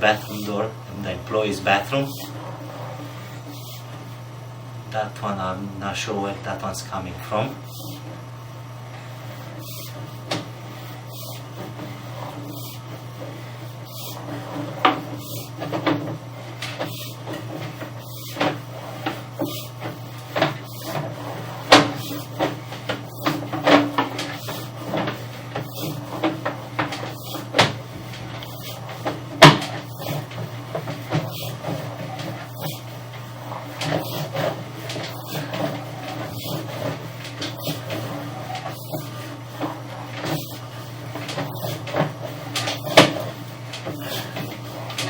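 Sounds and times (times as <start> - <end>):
steady low hum: 0.0 - 45.0
knocks and clicks of cable: 21.7 - 33.2, 41.2 - 45.0.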